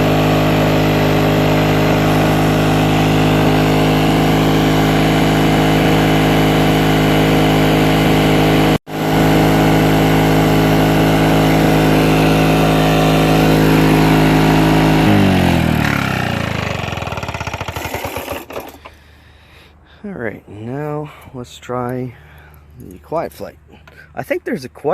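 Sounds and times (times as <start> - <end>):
engine winding down: 0.0 - 19.2
lawn mower engine running: 0.0 - 19.6.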